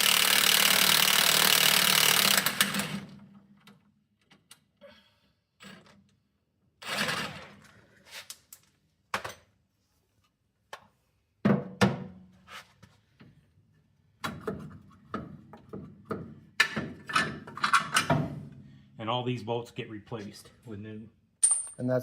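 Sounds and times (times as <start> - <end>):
metal tools clanking and knocking: 16.6 - 18.2, 21.4 - 21.9.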